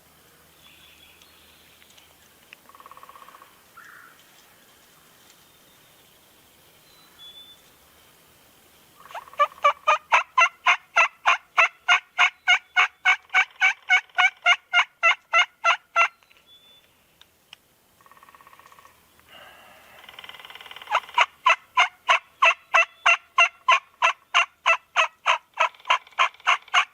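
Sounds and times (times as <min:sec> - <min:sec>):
turkey yelping: 0:09.0 - 0:16.1, 0:20.0 - 0:26.9.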